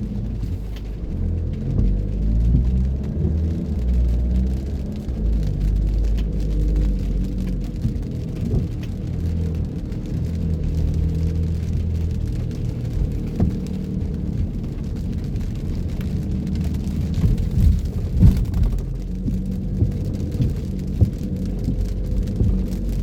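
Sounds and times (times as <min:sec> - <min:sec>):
car road and engine rumble: 0:00.0 - 0:23.0
rain: 0:00.0 - 0:23.0.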